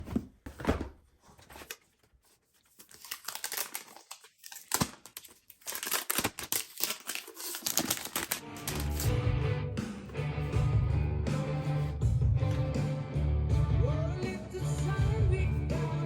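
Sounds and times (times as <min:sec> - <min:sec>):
wrapping crinkling and tearing: 0:01.5 - 0:09.2.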